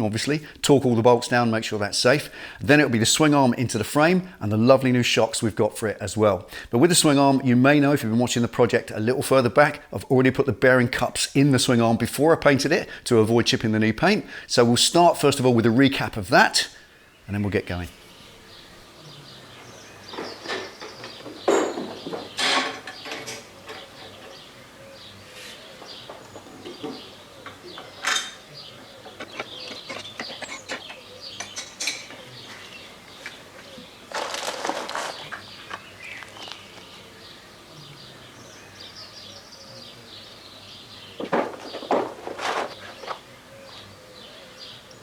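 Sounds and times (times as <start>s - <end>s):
faint birdsong: 0.0s - 45.0s
metal tools clinking: 20.1s - 24.5s, 25.8s - 32.9s.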